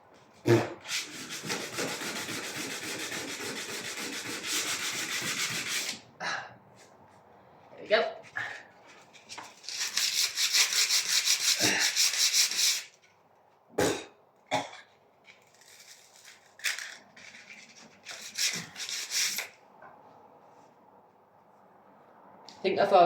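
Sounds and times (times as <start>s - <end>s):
fast rubbing strokes on a surface: 0.8s - 6.0s, 9.6s - 12.9s, 18.1s - 19.5s.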